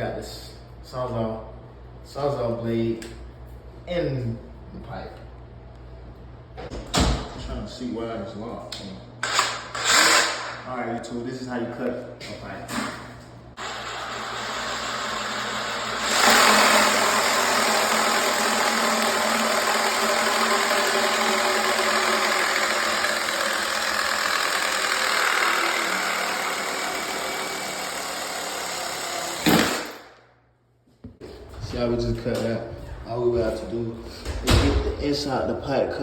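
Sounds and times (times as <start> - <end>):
reciprocating saw cutting pipe: 13.6 - 30.0.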